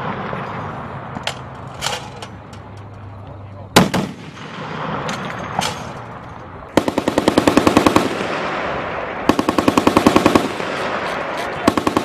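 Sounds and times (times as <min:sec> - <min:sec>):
heavy machine gun firing: 0:03.8 - 0:05.6, 0:06.7 - 0:12.0
gunfire echo: 0:03.8 - 0:06.1, 0:06.7 - 0:12.0.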